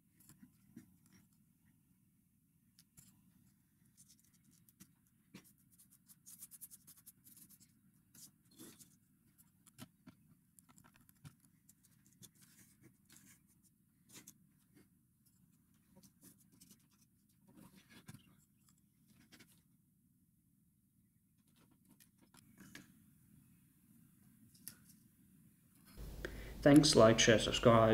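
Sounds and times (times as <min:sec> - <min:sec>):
faint scratching and clicks: 0:00.0 - 0:01.8, 0:02.7 - 0:19.7, 0:21.4 - 0:23.0, 0:24.4 - 0:25.1.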